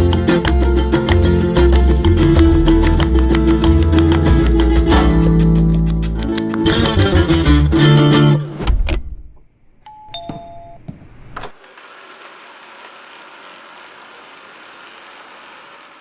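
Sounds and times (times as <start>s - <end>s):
two-note electronic beep: 1.1s - 3.0s.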